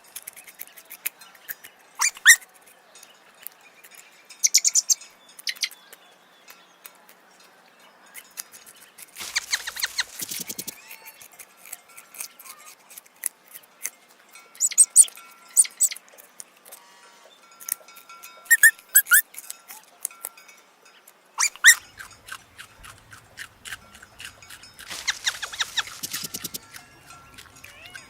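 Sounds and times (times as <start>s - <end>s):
light background music: 0.0s - 28.0s
short squeaks: 2.0s - 2.4s, 9.2s - 11.1s, 18.5s - 19.2s, 21.4s - 28.0s
crisp crunching clicks: 8.5s - 12.3s, 21.4s - 28.0s.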